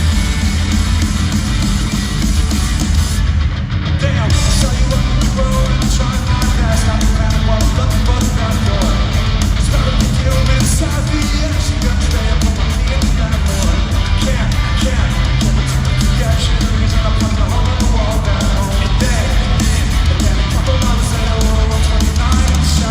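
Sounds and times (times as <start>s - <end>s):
live rock band playing: 0.0s - 22.9s.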